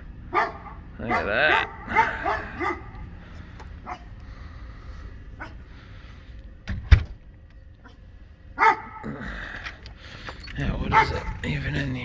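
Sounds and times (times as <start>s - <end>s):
furnace burning rumble: 0.0s - 12.0s
dog barking: 0.2s - 3.2s, 3.8s - 4.2s, 5.4s - 5.7s, 8.6s - 9.1s, 10.6s - 11.6s.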